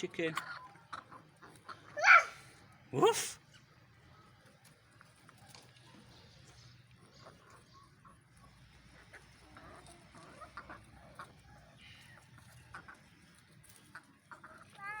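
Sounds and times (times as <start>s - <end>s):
hens clucking: 0.0s - 2.0s, 2.6s - 14.9s.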